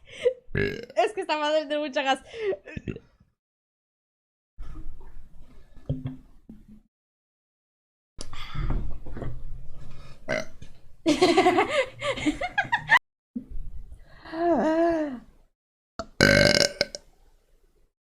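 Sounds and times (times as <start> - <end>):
person burping: 0.5 - 1.0, 2.8 - 3.1, 16.0 - 17.0.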